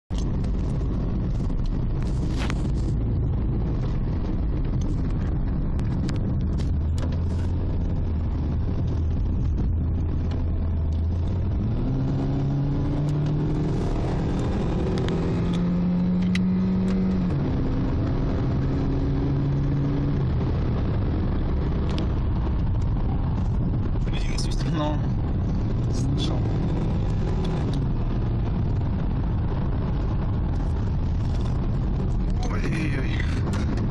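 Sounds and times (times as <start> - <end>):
car engine running: 0.1 - 33.9
road noise: 0.1 - 33.9.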